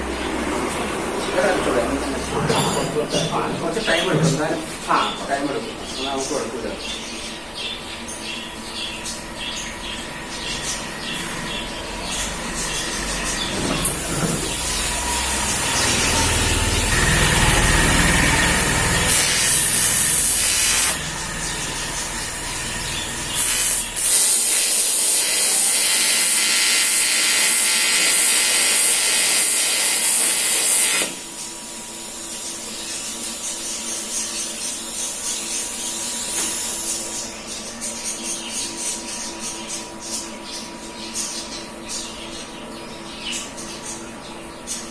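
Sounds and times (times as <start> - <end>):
welding arc hissing crackle: 18.5 - 21.1, 23.3 - 31.3.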